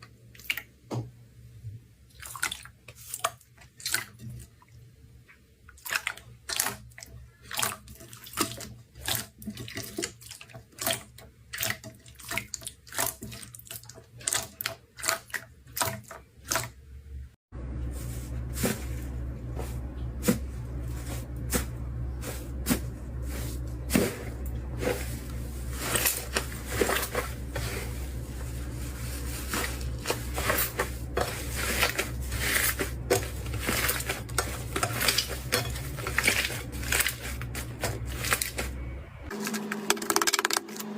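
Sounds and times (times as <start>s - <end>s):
low steady hum: 16.2s - 40.9s.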